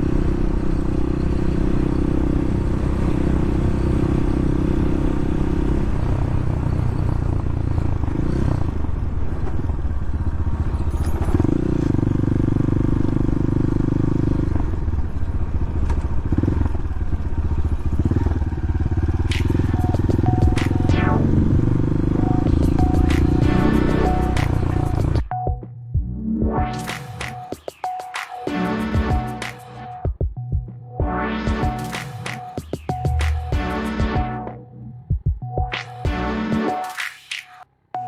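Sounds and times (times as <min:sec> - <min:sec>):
dirt bike engine running: 0:00.0 - 0:25.4.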